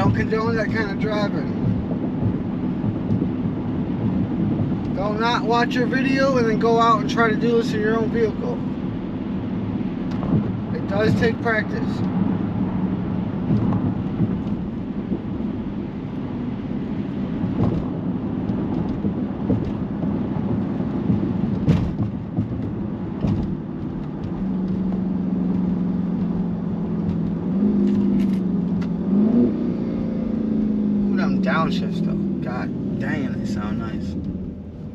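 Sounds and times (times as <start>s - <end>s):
car engine running: 0.0s - 34.9s
tyre noise on wet road: 0.0s - 34.9s
short knocks: 17.4s - 25.0s.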